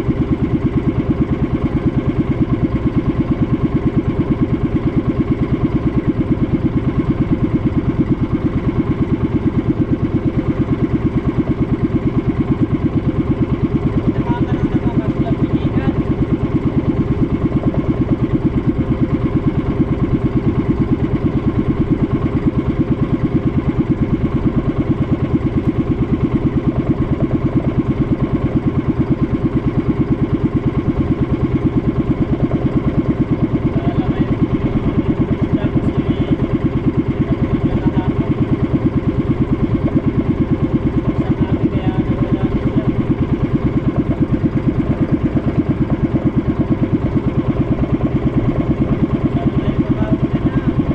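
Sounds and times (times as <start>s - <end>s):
small boat engine puttering: 0.0s - 50.9s.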